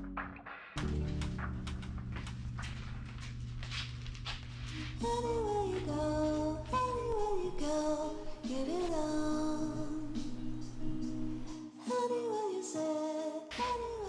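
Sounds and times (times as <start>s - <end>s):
low musical accompaniment: 0.0s - 12.4s
person singing song: 4.7s - 14.0s.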